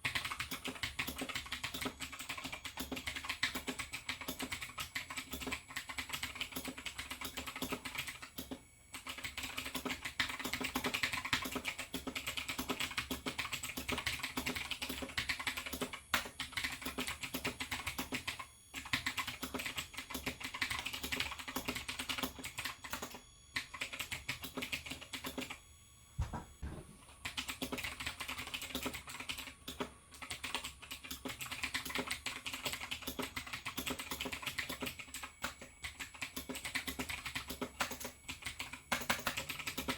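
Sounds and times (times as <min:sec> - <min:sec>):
typing on clicky keyboard: 0:00.0 - 0:25.6, 0:27.2 - 0:39.9
low thud: 0:26.2 - 0:26.9.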